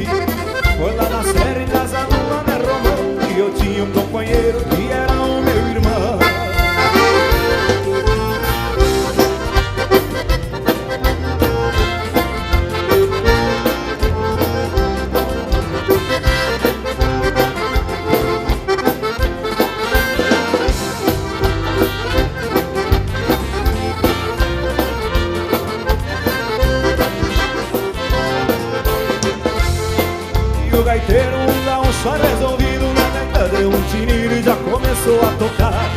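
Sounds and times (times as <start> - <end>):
accordion: 0.0 - 35.9
bass and drum beat: 0.0 - 35.9.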